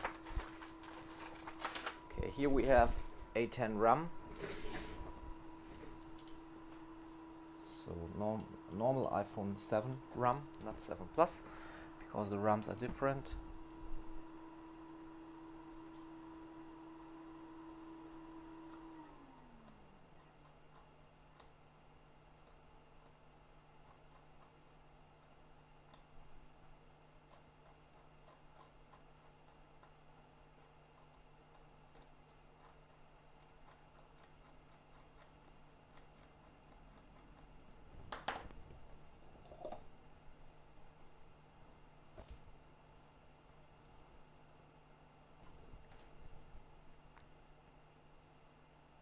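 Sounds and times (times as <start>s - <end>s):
handling noises: 0.0s - 3.5s
low steady hum: 0.0s - 49.0s.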